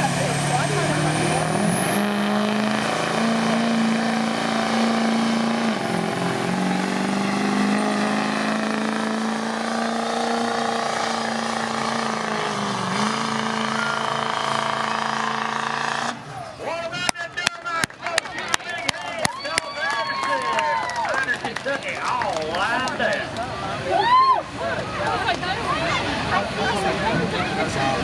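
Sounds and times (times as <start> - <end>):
vehicle engine running loud: 0.0 - 17.1.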